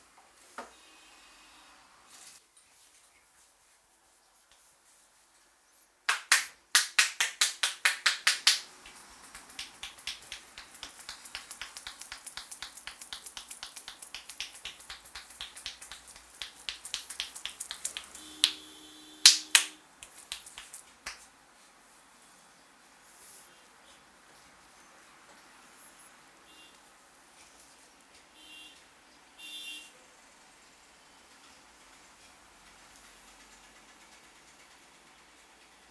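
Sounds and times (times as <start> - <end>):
hands slapping on head: 6.1 - 18.6, 19.2 - 21.3
light quick hand taps: 6.1 - 18.6, 19.3 - 21.2.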